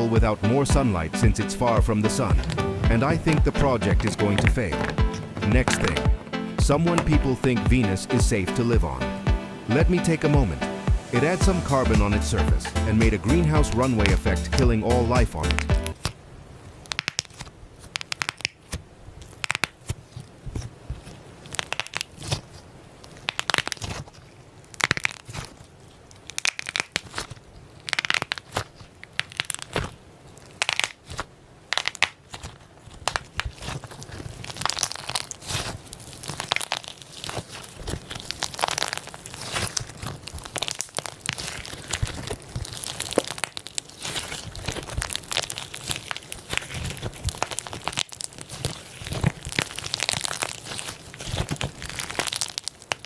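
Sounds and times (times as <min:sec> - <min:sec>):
slime crackling and crunching: 0:00.0 - 0:07.5, 0:16.8 - 0:53.0.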